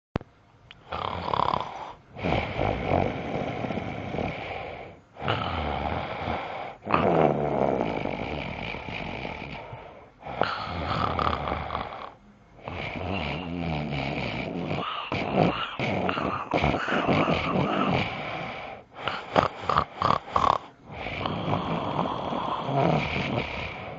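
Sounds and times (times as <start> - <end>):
person snoring: 0.8 - 23.9.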